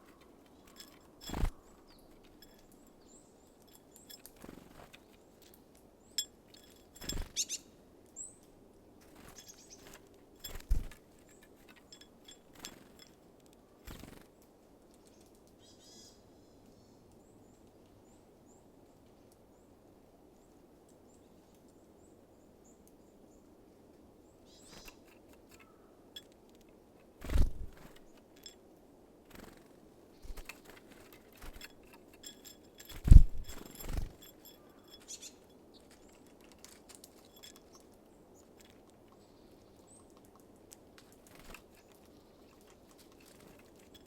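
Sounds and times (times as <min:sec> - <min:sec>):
birds knocking at feeder: 0:00.0 - 0:02.7, 0:06.2 - 0:07.6, 0:09.2 - 0:13.1, 0:30.2 - 0:37.8
high bird chirps: 0:07.1 - 0:07.6.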